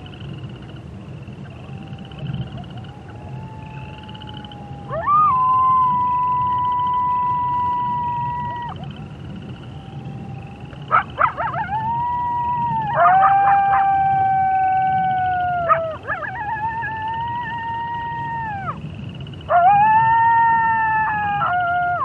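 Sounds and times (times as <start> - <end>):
wolves yipping: 1.4 - 9.1, 10.7 - 18.8
wolves howling: 1.4 - 22.0.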